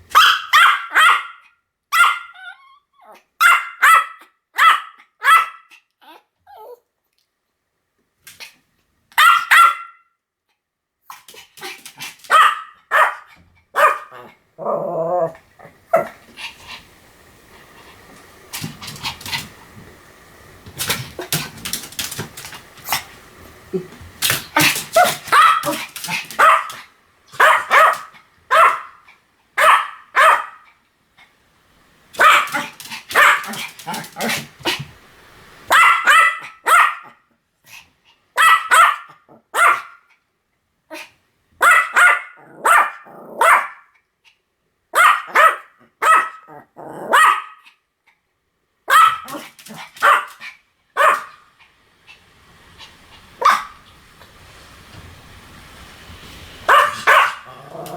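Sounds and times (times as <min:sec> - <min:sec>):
small dog barking: 0:00.1 - 0:02.5, 0:03.4 - 0:05.8, 0:09.2 - 0:10.1, 0:11.1 - 0:16.2, 0:24.2 - 0:30.6, 0:32.2 - 0:34.8, 0:35.7 - 0:37.2, 0:38.4 - 0:40.1, 0:41.6 - 0:43.9, 0:44.9 - 0:47.7, 0:48.9 - 0:51.4, 0:53.4 - 0:53.9, 0:56.6 - 0:57.9.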